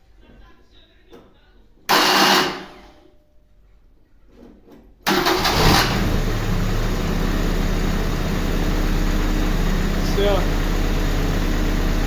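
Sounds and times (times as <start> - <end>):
car engine starter cranking: 1.9 - 2.8, 5.1 - 7.6
car engine running: 5.5 - 12.0.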